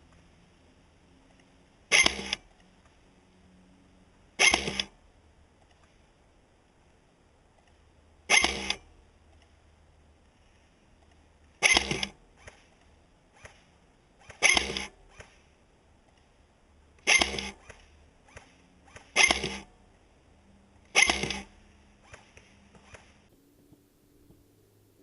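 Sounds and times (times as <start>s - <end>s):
faint clicks: 6.9s - 7.8s, 10.2s - 19.6s
airsoft gun shots: 17.0s - 19.7s, 20.9s - 23.1s.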